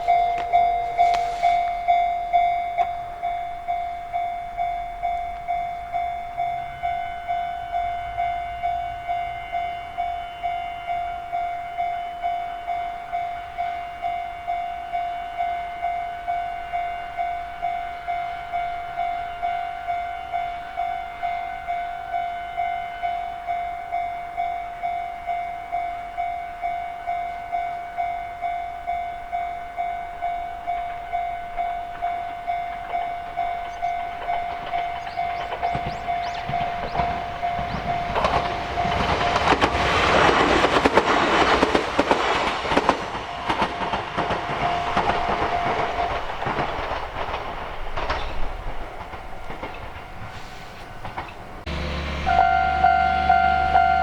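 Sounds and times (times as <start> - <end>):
higher second ringing tone: 0.0 - 37.8, 51.7 - 54.0
level-crossing warning bell ringing: 0.0 - 40.9, 49.2 - 54.0.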